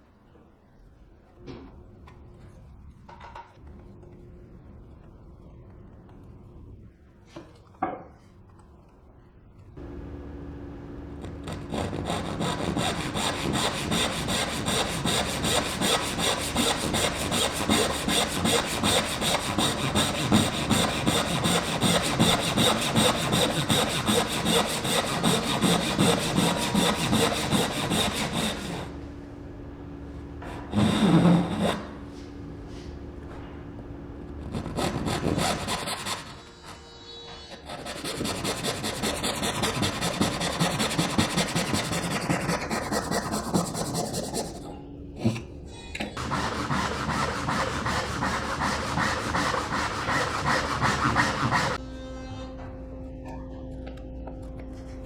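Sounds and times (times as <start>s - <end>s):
hand saw cutting wood: 11.0s - 29.1s, 30.4s - 32.5s, 34.4s - 36.5s, 37.5s - 44.7s, 46.2s - 51.8s.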